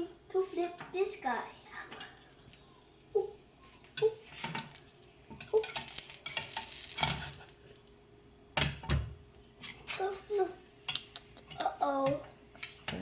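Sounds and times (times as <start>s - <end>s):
faint batter sizzling: 0.0s - 13.0s
spatula scraping a frying pan: 4.0s - 7.6s, 9.6s - 10.6s.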